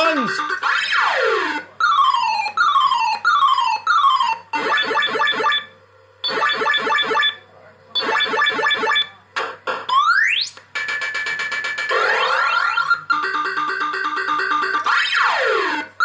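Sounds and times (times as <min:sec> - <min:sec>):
falling electronic bleeps: 0:08.0 - 0:09.1
fast warbling bleeps: 0:08.0 - 0:09.1.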